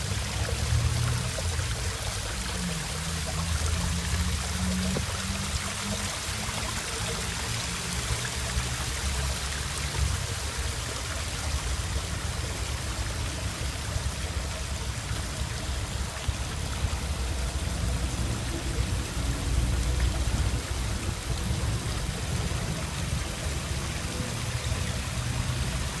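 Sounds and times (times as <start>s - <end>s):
waterfall splashing over stone: 0.0s - 26.0s
low uneven rumble: 10.2s - 26.0s.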